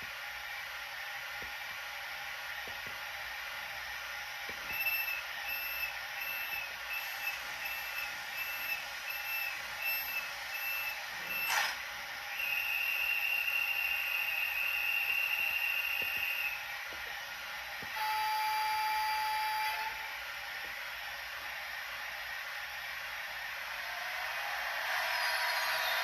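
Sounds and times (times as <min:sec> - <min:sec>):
steady high tone: 0:23.6 - 0:26.0.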